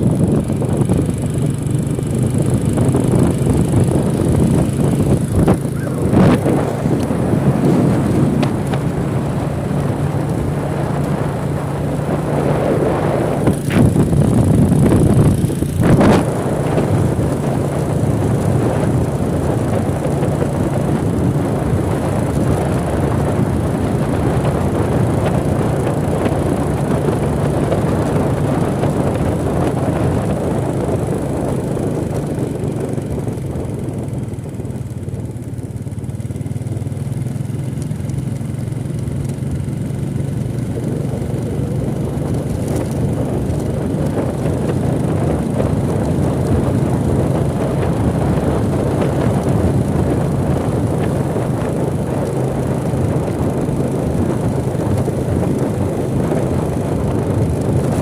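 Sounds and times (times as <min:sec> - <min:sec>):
motorcycle engine running: 0:00.0 - 0:58.0
road and wind noise: 0:00.0 - 0:58.0.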